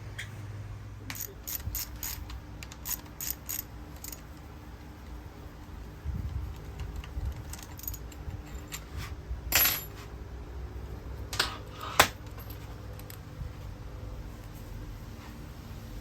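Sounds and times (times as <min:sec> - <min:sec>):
low steady hum: 0:00.0 - 0:16.0
metal objects clinking: 0:01.1 - 0:04.4, 0:06.8 - 0:10.0
metallic rattle: 0:01.1 - 0:04.5, 0:06.5 - 0:09.9.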